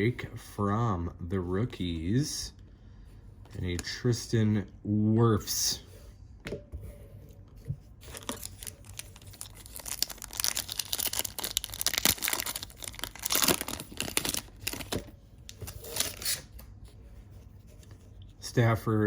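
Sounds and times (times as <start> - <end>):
foil wrapper crinkling and tearing: 8.1 - 16.6.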